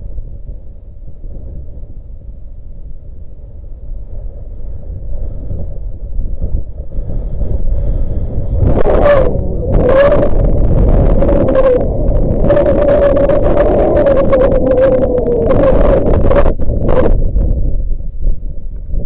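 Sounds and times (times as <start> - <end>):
wind buffeting microphone: 0.0 - 19.0
wavering whistling tone: 8.6 - 17.1.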